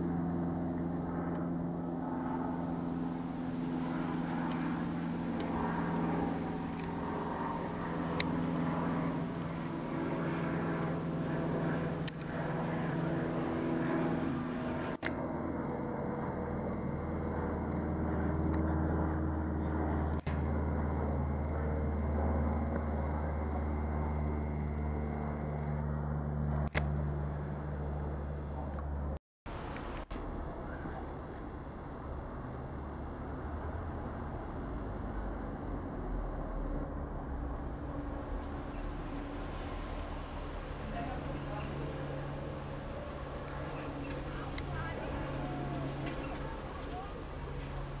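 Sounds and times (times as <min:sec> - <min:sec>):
light aircraft droning overhead: 0:00.0 - 0:48.0
sharp clicks: 0:12.0 - 0:12.4.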